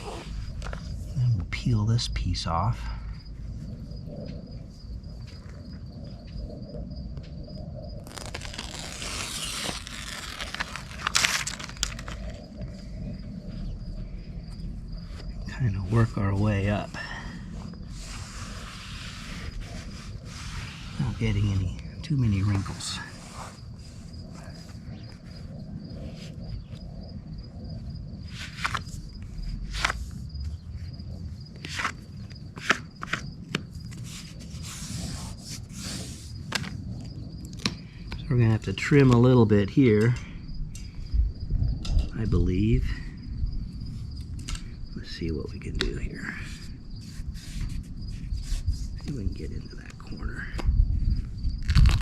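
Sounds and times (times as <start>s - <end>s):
tape crackling and rustling: 7.9s - 12.8s, 28.3s - 30.8s, 51.6s - 52.0s
loud paper rip: 8.0s - 12.1s
backing paper crinkling and tearing: 8.0s - 12.4s, 51.6s - 52.0s.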